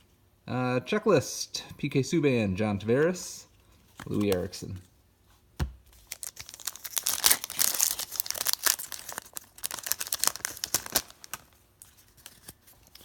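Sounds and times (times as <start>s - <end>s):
card pack wrapper crinkling: 4.0s - 4.6s, 5.9s - 13.0s.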